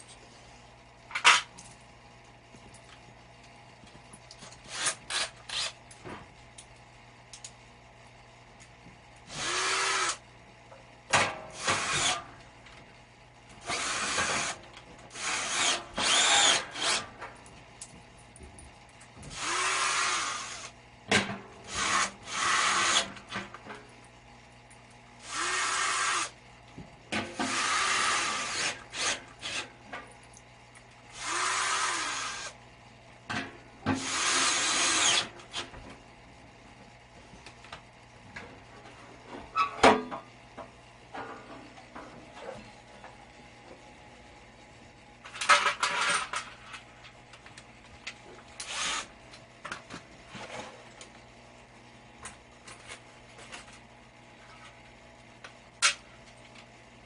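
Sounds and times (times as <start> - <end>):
steady low hum: 0.0 - 57.0
power drill whirring: 9.3 - 10.2, 11.6 - 12.2, 13.7 - 17.0, 19.3 - 20.7, 21.7 - 23.1, 25.2 - 26.4, 27.5 - 29.6, 31.2 - 32.6, 34.0 - 35.3, 48.6 - 49.1.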